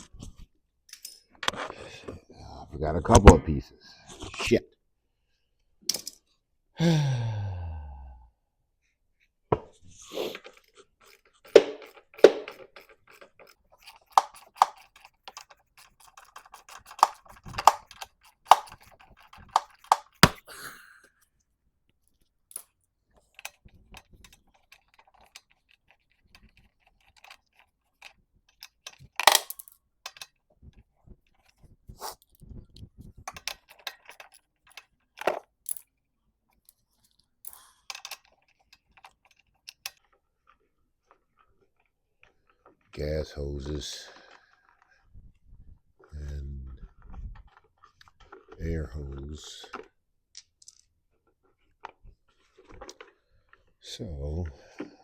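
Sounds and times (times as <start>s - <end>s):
clicks and clinks of hand tools: 11.3s - 20.5s, 28.9s - 30.3s.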